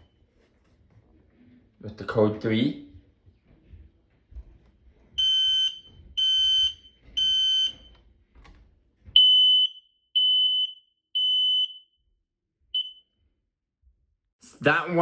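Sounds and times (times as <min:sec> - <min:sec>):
smoke detector beeping: 0:05.2 - 0:07.9, 0:09.2 - 0:11.9, 0:12.8 - 0:13.1.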